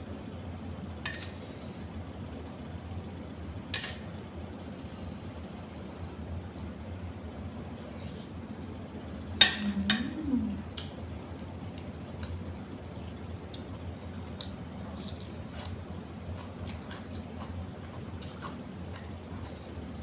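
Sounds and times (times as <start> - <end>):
steady low hum: 0.0 - 20.0
person humming: 9.5 - 10.7.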